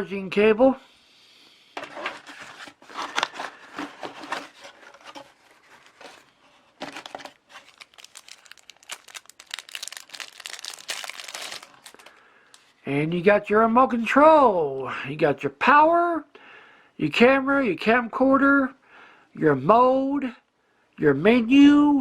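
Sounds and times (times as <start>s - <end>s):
packaging crinkling: 2.1s - 12.7s.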